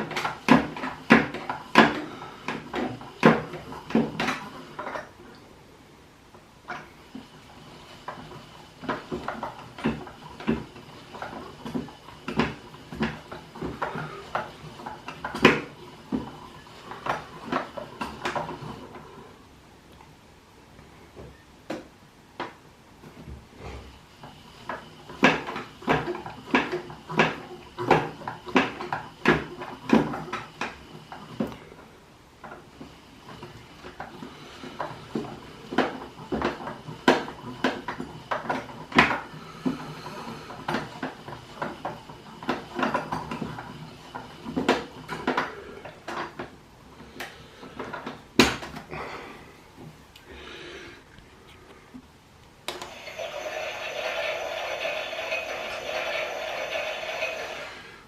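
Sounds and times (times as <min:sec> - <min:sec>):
toy washing machine clattering: 0:00.0 - 0:05.2, 0:06.7 - 0:19.1, 0:24.6 - 0:31.5, 0:33.3 - 0:46.6, 0:52.7 - 0:58.0.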